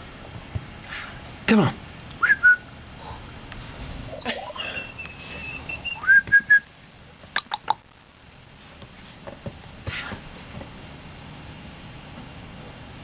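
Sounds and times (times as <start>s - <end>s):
person whistling: 2.2s - 2.6s, 4.6s - 6.6s.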